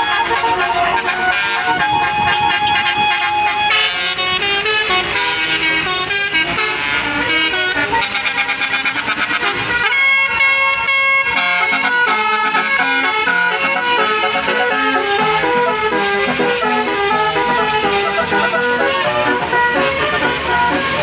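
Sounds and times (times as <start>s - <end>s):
musical air horn melody: 0.0s - 21.0s.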